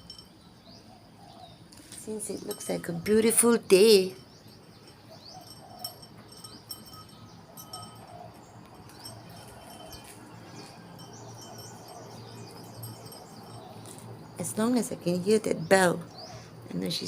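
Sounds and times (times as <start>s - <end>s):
small bell jingling: 0.0s - 0.4s, 2.1s - 14.7s.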